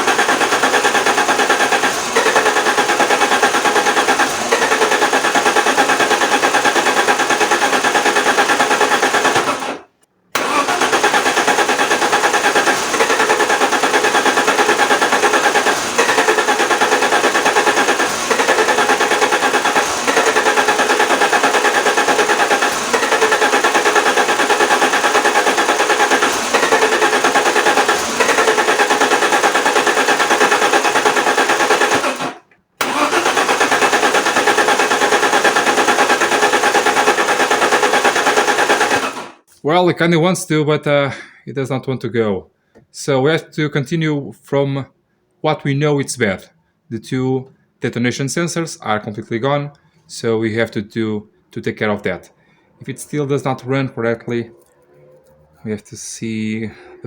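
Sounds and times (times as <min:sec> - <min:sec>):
car engine cranking on starter: 0:00.0 - 0:39.5.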